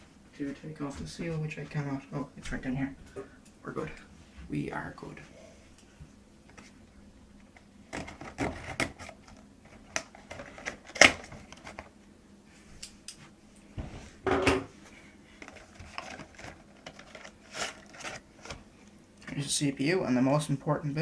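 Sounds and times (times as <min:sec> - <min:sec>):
cardboard box rustling open: 0:15.5 - 0:18.6.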